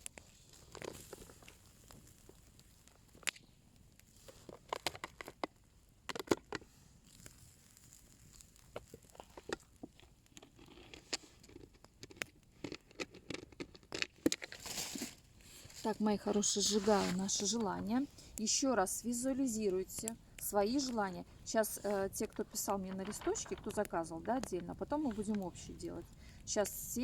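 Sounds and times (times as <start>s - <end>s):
bonfire crackling and popping: 0.0s - 27.0s.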